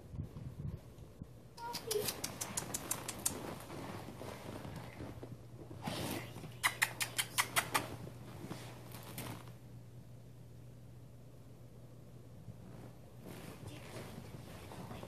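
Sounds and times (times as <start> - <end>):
sharp clicks: 1.6 - 3.4
puppies scuffling and rustling: 1.6 - 7.0, 7.6 - 9.6, 12.4 - 15.0.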